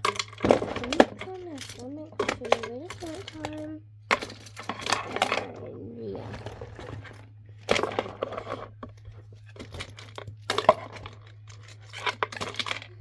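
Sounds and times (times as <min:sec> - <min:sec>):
plastic toys crinkling and clicking: 0:00.0 - 0:13.0.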